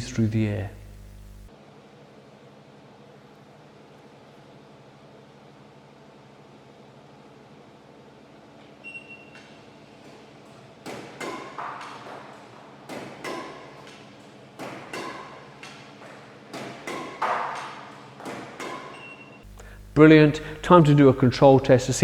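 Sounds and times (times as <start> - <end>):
racket hits with ringing ping: 14.9 - 15.4, 16.6 - 19.2.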